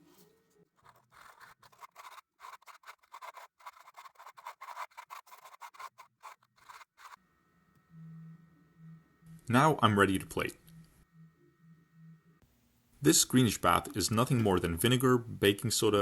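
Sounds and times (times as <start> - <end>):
sandpaper rasping on metal tip: 0.8 - 7.2.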